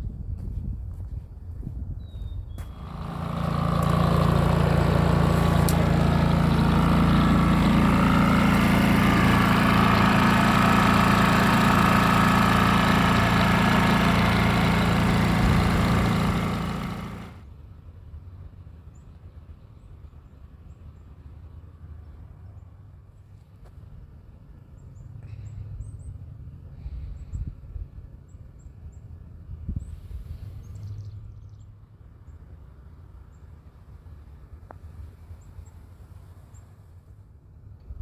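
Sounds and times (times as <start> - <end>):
engine running loud: 2.6 - 18.8.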